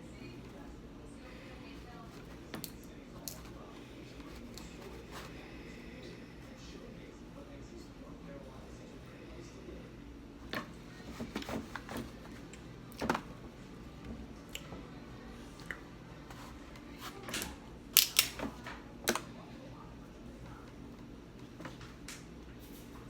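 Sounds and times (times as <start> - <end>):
crab shells cracking: 18.0 - 18.4.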